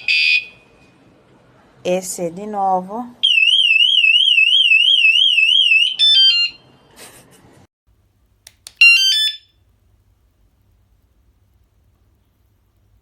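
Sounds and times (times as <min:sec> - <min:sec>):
warbling alarm siren: 0:03.2 - 0:06.6, 0:08.8 - 0:09.5
electronic chirps: 0:08.8 - 0:09.5.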